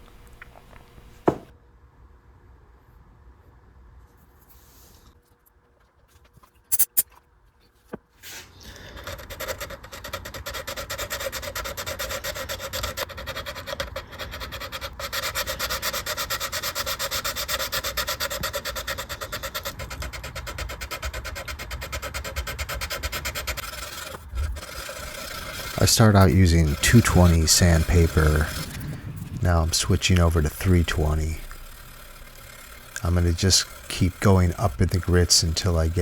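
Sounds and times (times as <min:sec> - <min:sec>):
sandpaper rubbing: 0:09.0 - 0:36.0.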